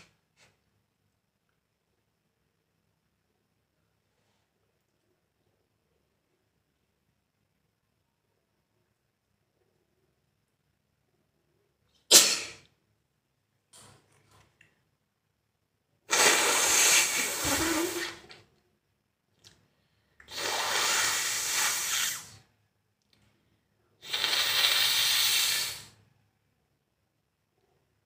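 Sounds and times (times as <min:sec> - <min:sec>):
person blowing nose: 0:12.1 - 0:12.6, 0:16.1 - 0:18.3, 0:20.3 - 0:22.4, 0:24.0 - 0:26.0.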